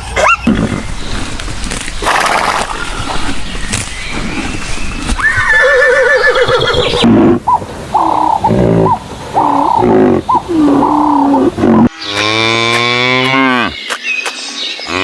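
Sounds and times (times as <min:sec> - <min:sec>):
horse whinnying: 0:05.2 - 0:07.4.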